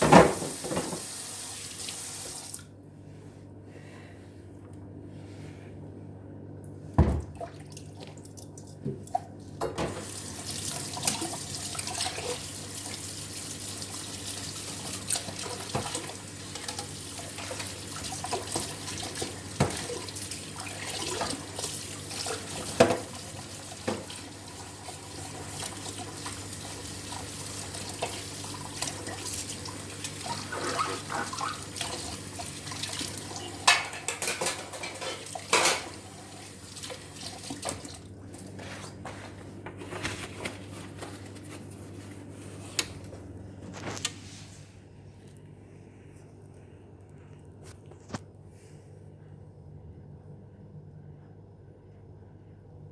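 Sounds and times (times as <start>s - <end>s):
tap water running into sink: 0.0s - 2.6s, 8.9s - 38.1s
dishes and utensils clinking: 33.3s - 36.0s.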